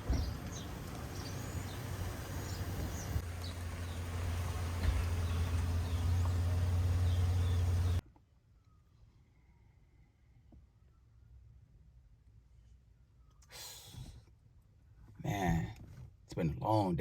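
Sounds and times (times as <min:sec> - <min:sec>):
birds chirping: 0:00.0 - 0:08.0.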